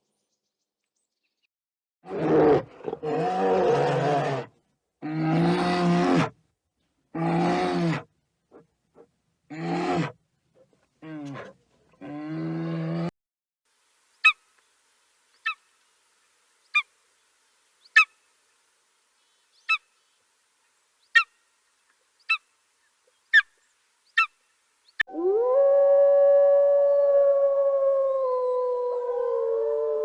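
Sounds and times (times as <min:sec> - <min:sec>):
short sharp animal calls: 0:17.9 - 0:18.2.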